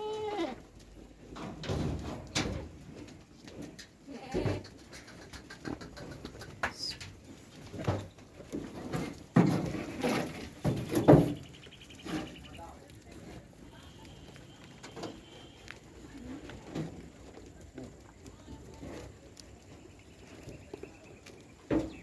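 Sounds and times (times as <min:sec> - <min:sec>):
goats bleating: 0:00.0 - 0:00.6
knocks and shuffling: 0:00.7 - 0:22.0.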